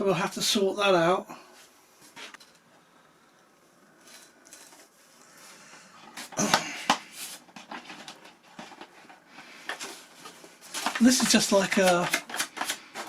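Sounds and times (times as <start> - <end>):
foam parts rustling: 4.0 - 13.0
sharp plastic clacks: 6.2 - 13.0.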